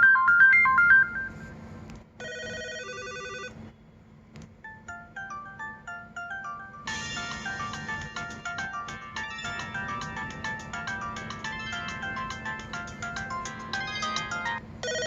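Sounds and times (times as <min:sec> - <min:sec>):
phone ringtone melodies: 0:00.0 - 0:01.5, 0:02.2 - 0:03.5, 0:04.6 - 0:15.0.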